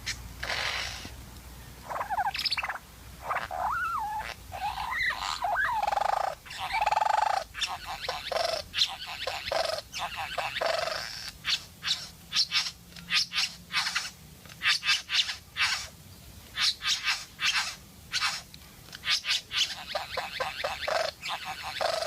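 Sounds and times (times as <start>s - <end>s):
bird calling with whistles and trills: 1.8s - 15.9s, 16.6s - 22.0s.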